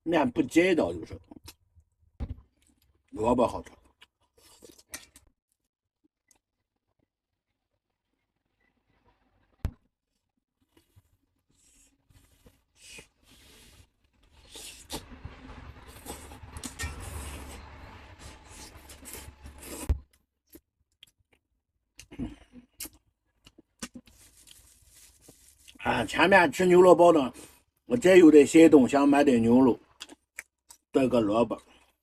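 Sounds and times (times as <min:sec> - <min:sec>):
rustling and scraping: 0:24.0 - 0:25.7.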